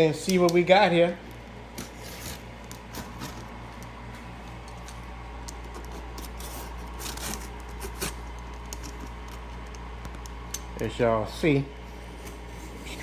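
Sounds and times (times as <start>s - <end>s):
steady low hum: 0.0s - 13.0s
cardboard packaging being opened: 5.6s - 9.5s.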